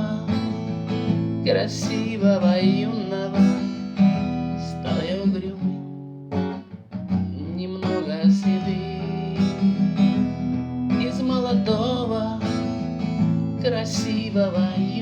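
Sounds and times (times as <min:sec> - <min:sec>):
strummed acoustic guitar: 0:00.0 - 0:15.0
person singing: 0:07.4 - 0:12.7, 0:13.6 - 0:15.0.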